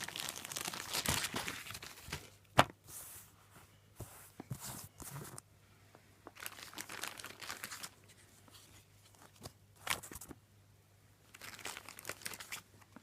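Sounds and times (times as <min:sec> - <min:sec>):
crinkly packaging rustling: 0:00.0 - 0:02.9, 0:06.3 - 0:10.4, 0:11.3 - 0:13.0.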